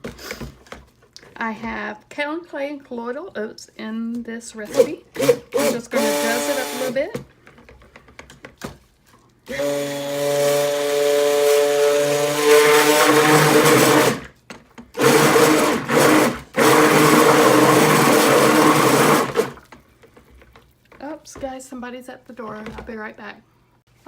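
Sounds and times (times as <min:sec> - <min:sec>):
stick blender mixing: 0:04.6 - 0:21.5.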